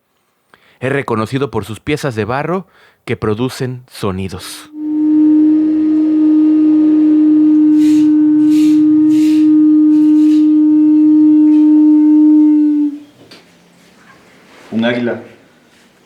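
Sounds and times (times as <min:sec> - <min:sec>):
clay wind instrument low note: 0:04.5 - 0:13.1
short hissing sounds: 0:07.7 - 0:10.5.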